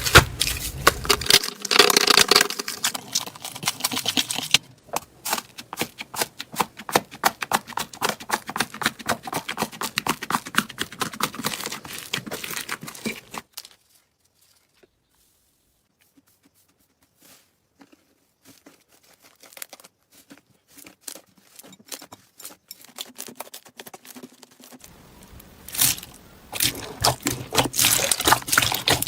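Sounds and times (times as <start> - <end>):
slime squeezed crackling: 25.7 - 29.0.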